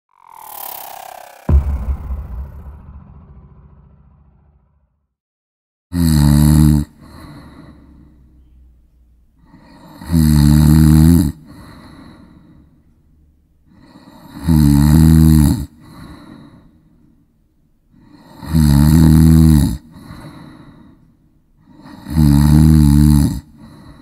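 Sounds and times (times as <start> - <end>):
person snoring: 5.9 - 8.0, 9.5 - 11.9, 13.8 - 16.2, 18.0 - 20.3, 21.6 - 24.0
quiet breath: 7.0 - 10.0, 11.4 - 13.0, 13.6 - 14.4, 15.7 - 17.3, 19.8 - 22.1, 23.4 - 24.0.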